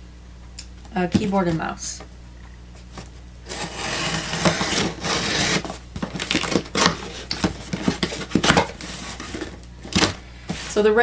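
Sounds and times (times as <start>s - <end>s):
cardboard sliding and scraping: 2.9s - 10.9s.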